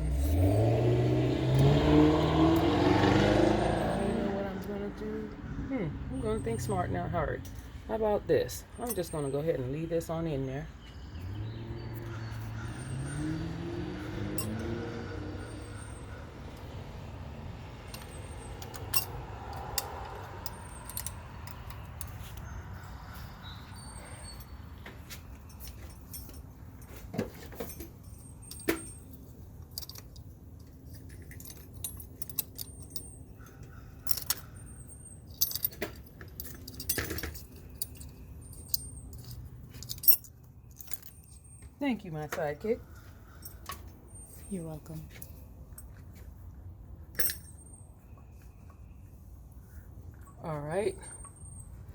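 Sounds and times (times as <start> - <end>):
metallic clicks of hand tools: 17.9 - 22.5, 29.6 - 34.6.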